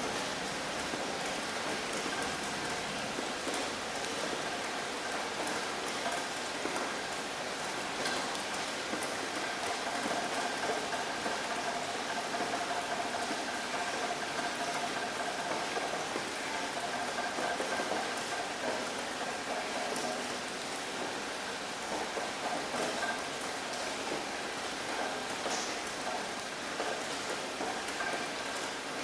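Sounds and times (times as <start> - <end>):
steady rain hiss: 0.0 - 29.0
raindrops ticking: 7.8 - 29.0.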